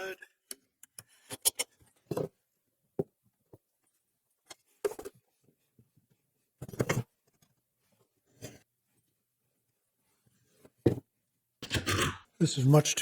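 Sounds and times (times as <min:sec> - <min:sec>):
knocks and clatters of tools: 0:11.6 - 0:12.2.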